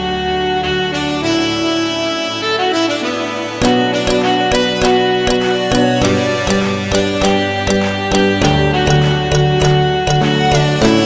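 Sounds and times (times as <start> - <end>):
plucked-string tune over a beat: 3.6 - 11.0.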